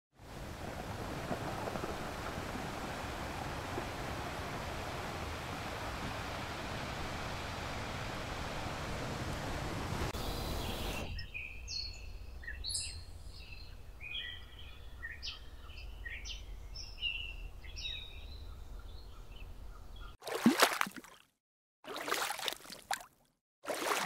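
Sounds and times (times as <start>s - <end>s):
surf-like noise: 0.2s - 11.1s
songbirds chirping and whistling: 10.2s - 20.2s
loud splashing water: 20.2s - 24.0s.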